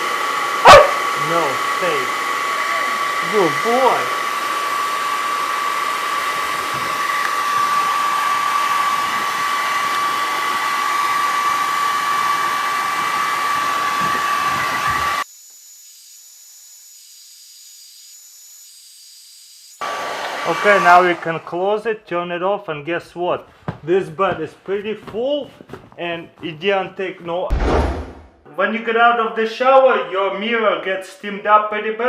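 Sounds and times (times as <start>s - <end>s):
hair dryer blowing air: 0.0s - 15.3s, 19.7s - 21.8s.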